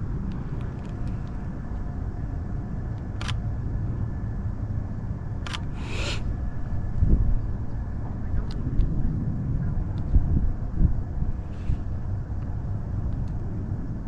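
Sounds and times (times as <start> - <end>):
low outdoor rumble: 0.0 - 14.0
camera shutter clicking: 5.4 - 6.2
short hiss: 5.7 - 6.3.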